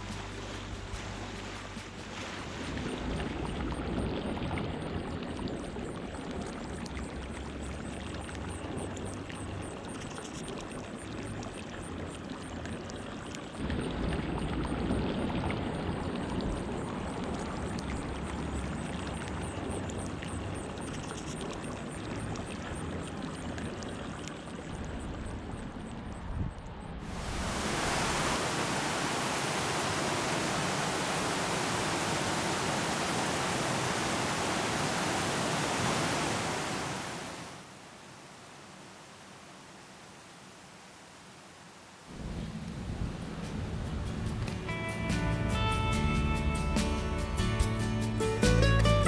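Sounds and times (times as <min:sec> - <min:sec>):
wind rushing over microphone: 0:27.0 - 0:37.6.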